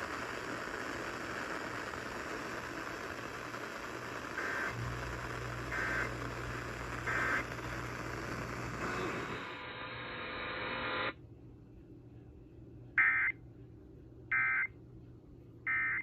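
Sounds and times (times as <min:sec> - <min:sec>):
radio noise hiss: 0:00.0 - 0:11.2
low hum: 0:04.7 - 0:15.7.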